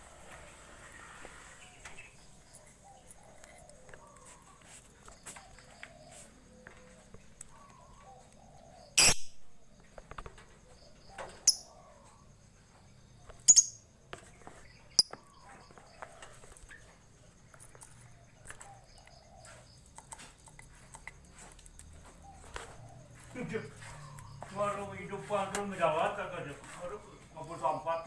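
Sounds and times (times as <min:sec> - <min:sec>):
faint high chirping: 0:00.0 - 0:28.0
lovebird shrill calls: 0:09.0 - 0:09.4, 0:13.4 - 0:13.8.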